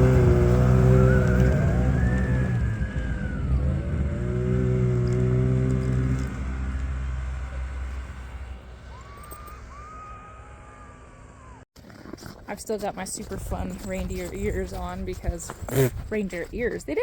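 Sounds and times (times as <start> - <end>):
snowmobile engine running: 0.0 - 17.0.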